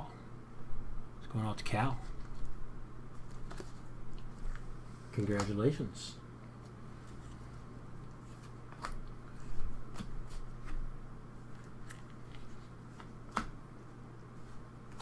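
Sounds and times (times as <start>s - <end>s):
low electrical hum: 0.0s - 15.0s
trading cards clicking and crinkling: 3.1s - 5.6s, 8.1s - 10.8s, 11.5s - 13.6s.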